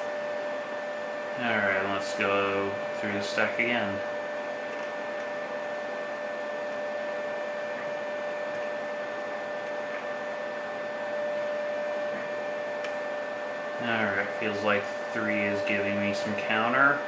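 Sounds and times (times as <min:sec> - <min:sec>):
three-d printer whirring: 0:00.0 - 0:17.0.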